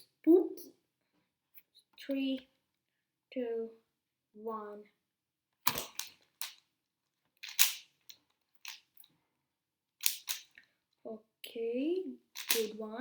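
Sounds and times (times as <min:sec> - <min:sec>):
puzzle cube plastic clicks: 0:05.6 - 0:06.7, 0:07.4 - 0:09.1, 0:10.0 - 0:10.7, 0:12.3 - 0:12.8.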